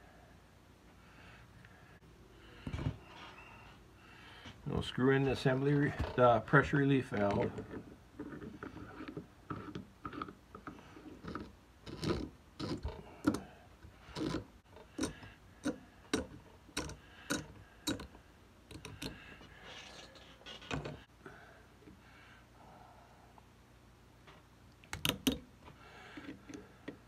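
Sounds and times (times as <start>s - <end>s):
metal clicks and knocks: 14.2s - 19.2s.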